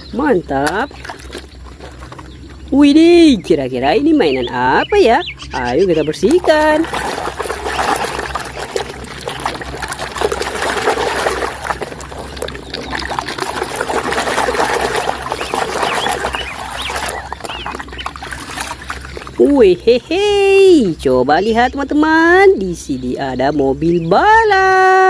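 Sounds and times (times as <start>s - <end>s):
water running and splashing: 0.0s - 2.8s, 6.0s - 19.8s.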